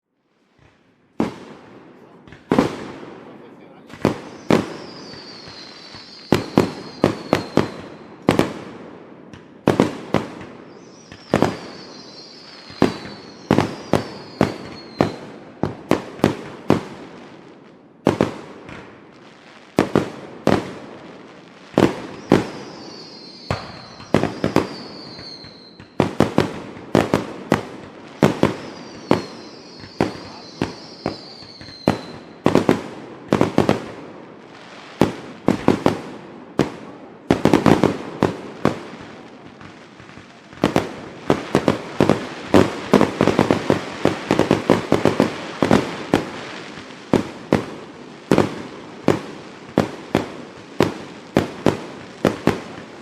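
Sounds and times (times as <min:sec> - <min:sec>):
fireworks bangs and pops: 0:00.3 - 0:53.0
firework whistle gliding down: 0:04.2 - 0:08.2, 0:10.7 - 0:15.4, 0:22.0 - 0:26.0, 0:28.2 - 0:32.4.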